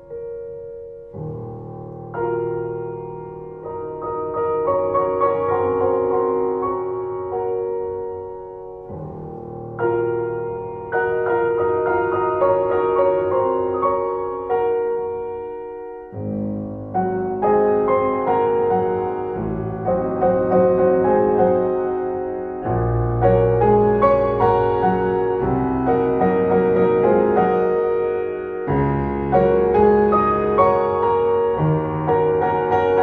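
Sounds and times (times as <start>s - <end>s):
calm solo piano music: 0.0s - 33.0s.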